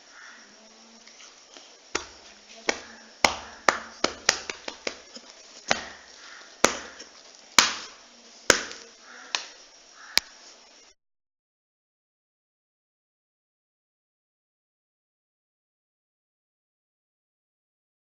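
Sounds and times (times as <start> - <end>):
hand slapping dog's body: 2.0 - 5.1.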